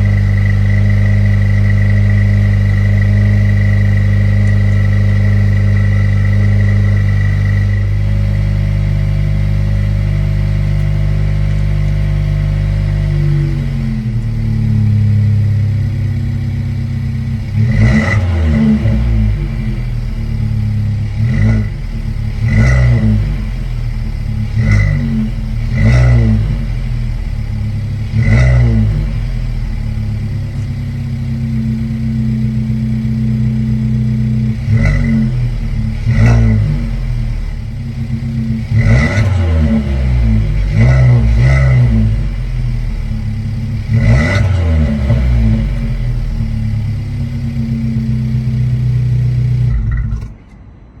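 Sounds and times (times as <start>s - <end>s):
car exhaust idling and revving: 0.0s - 51.0s.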